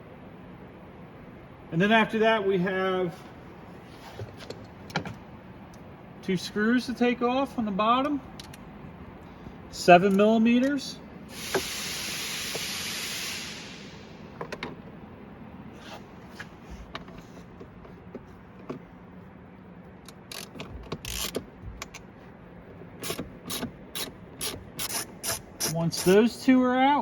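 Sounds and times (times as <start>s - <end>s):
brief hiss: 11.3s - 14.2s
socket ratchet clicking: 20.0s - 22.1s, 22.9s - 26.2s.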